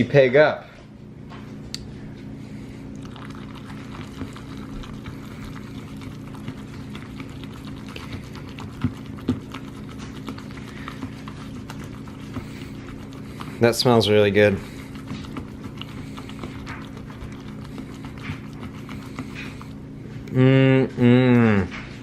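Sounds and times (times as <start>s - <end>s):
spoon stirring sauce in bowl: 3.2s - 19.8s.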